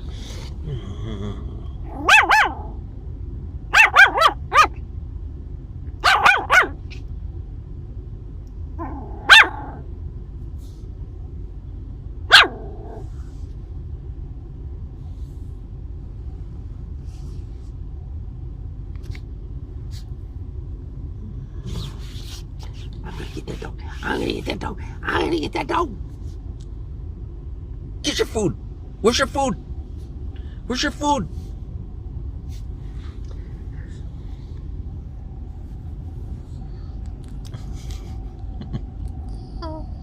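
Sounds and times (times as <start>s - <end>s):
puppy barking in high yaps: 1.9s - 2.8s, 3.7s - 4.8s, 6.0s - 7.0s, 8.8s - 9.8s, 12.3s - 13.0s.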